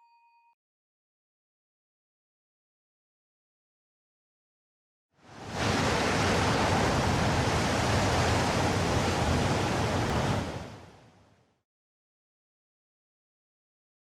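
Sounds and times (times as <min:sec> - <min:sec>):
steady rushing noise: 0:05.3 - 0:11.0.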